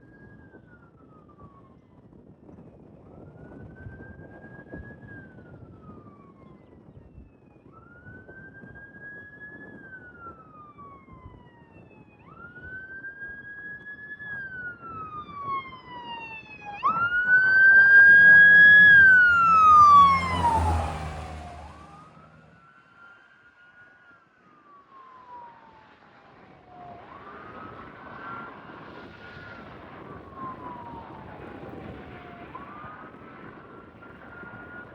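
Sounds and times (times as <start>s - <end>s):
ambulance siren wailing: 7.6s - 25.9s, 30.0s - 34.9s
low rumble of passing vehicle: 14.6s - 23.7s.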